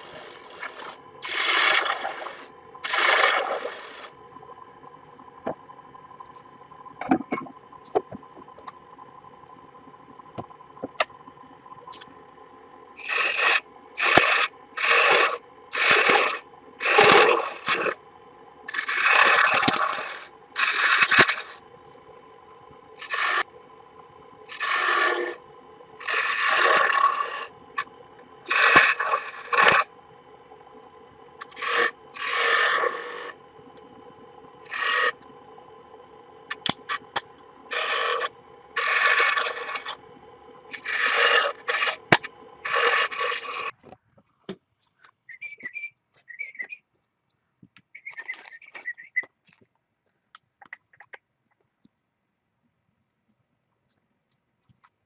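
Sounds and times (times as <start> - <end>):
scraping strokes: 13.0 - 18.0, 18.7 - 21.6, 28.5 - 29.9, 31.4 - 33.4, 36.5 - 40.0, 40.7 - 43.8.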